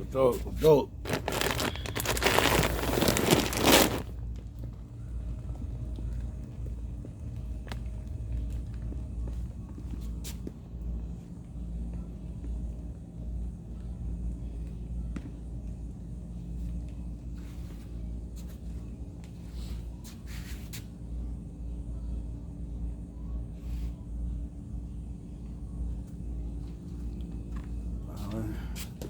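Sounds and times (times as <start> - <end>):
rustles and clicks: 1.0 - 4.2.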